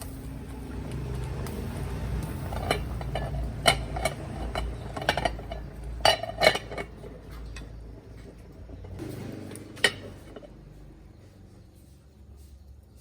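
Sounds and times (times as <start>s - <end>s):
dishes and utensils clinking: 2.2s - 10.6s.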